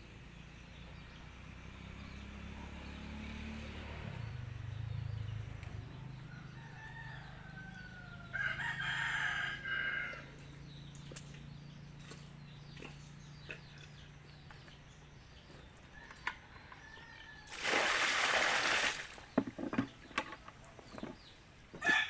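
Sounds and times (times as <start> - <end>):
rooster crowing: 6.3 - 10.4, 16.0 - 17.6, 21.8 - 22.0.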